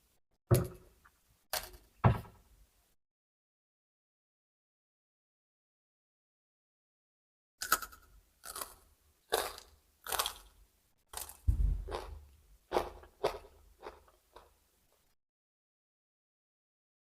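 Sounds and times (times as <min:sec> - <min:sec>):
chewing raw vegetables: 0:07.6 - 0:14.6.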